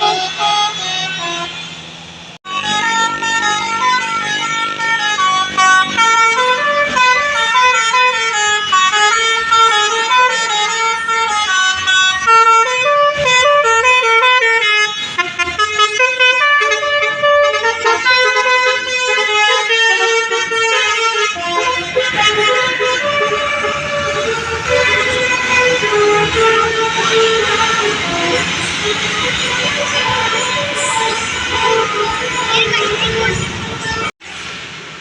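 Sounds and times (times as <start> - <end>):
bus multi-tone horn melody: 0.0 - 34.2.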